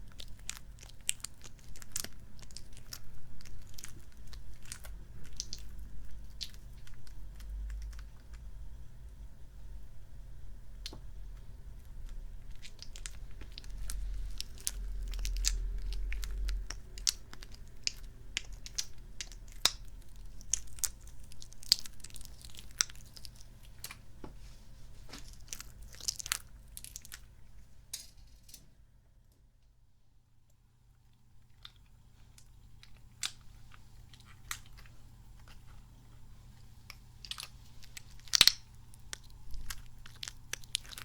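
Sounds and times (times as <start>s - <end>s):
squishy toy crackling and squelching: 12.4s - 24.0s.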